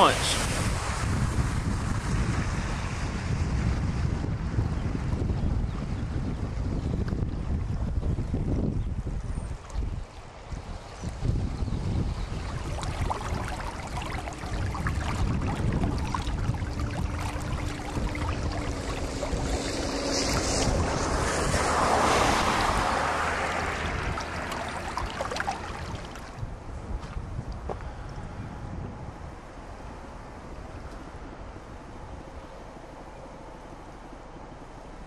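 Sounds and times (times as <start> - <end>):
water rushing: 0.0 - 1.5, 9.5 - 26.6
wind buffeting microphone: 0.0 - 32.6.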